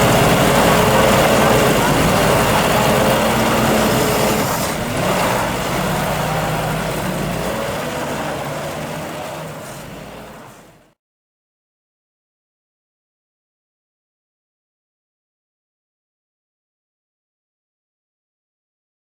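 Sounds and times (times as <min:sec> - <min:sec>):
tractor engine running: 0:00.0 - 0:10.9.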